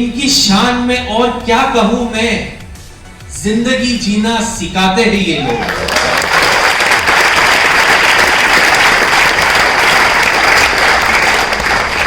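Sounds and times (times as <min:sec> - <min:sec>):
large audience applauding: 0:05.4 - 0:12.0.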